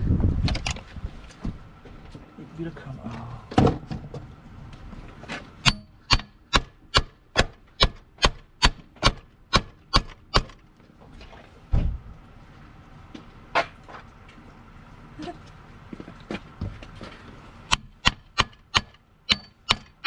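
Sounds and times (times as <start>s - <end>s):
sharp knocks on metal: 5.6s - 10.6s, 17.7s - 20.0s.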